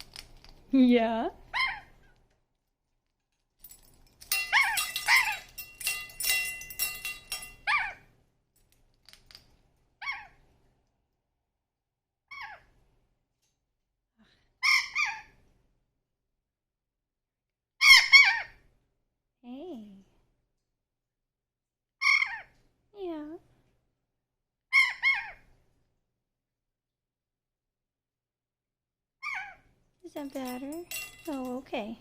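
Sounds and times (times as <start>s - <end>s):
bird chirping and squawking: 24.7s - 25.4s.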